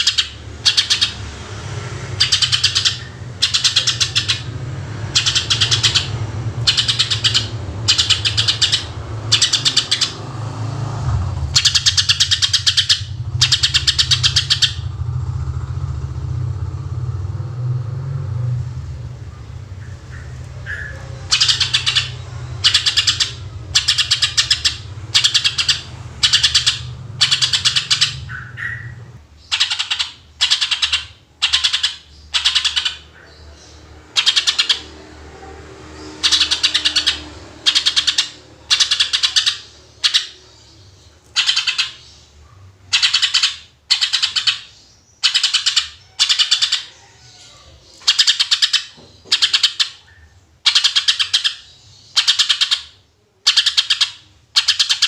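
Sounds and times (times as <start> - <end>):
bird singing harsh rapid bursts: 0.0 - 17.2, 19.0 - 55.0
low traffic rumble: 0.0 - 55.0.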